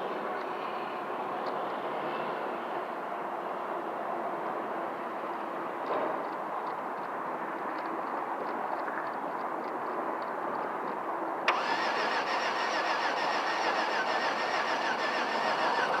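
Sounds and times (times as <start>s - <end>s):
car engine cranking: 11.5s - 16.0s.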